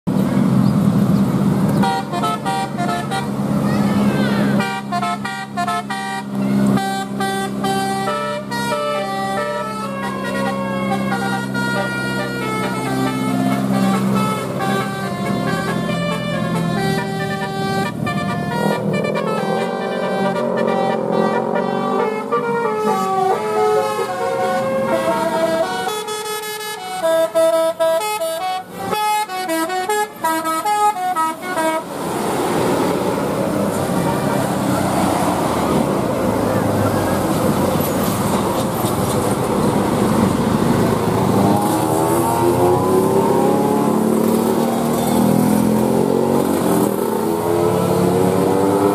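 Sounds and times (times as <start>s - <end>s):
multi-tone bus horn playing a tune: 1.7s - 32.0s, 33.7s - 37.6s
loud steady rushing noise: 31.4s - 48.9s.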